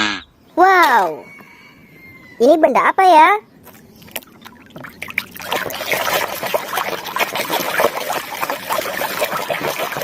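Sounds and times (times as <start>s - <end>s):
water splashing over plastic toy: 4.0s - 10.0s.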